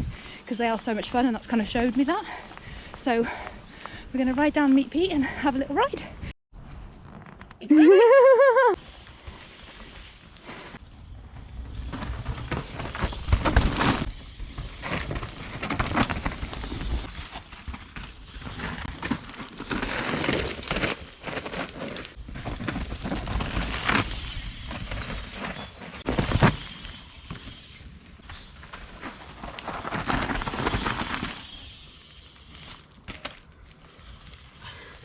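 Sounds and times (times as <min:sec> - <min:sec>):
bike tyres rolling over stones: 0:08.8 - 0:35.0
bike knocks and rattles: 0:09.3 - 0:31.9.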